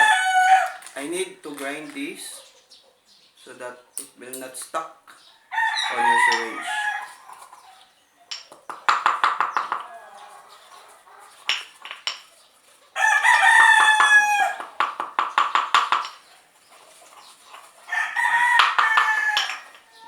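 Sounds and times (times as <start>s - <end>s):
rooster crowing: 0.0s - 0.9s, 5.4s - 7.5s, 9.6s - 11.3s, 13.0s - 14.8s, 17.9s - 20.0s.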